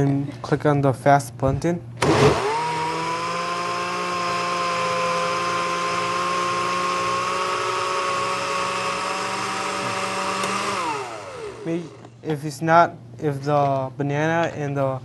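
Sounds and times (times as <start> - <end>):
blender motor whine: 2.0 - 12.2.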